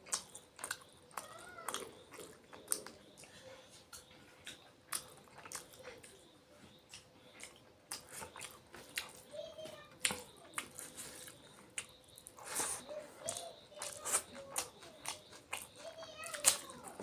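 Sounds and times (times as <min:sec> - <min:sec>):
wet chewing: 0:00.0 - 0:17.0
lip smacks and mouth clicks: 0:06.9 - 0:09.2.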